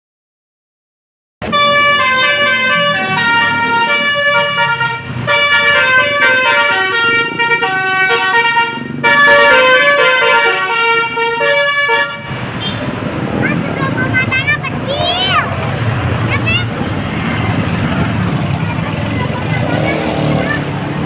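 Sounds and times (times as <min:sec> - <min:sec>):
musical air horns playing tune: 0:01.4 - 0:12.4.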